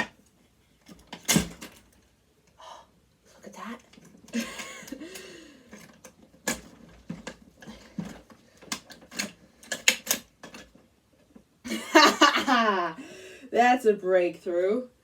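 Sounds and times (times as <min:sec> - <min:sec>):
metal parts clicking: 0:08.0 - 0:10.8.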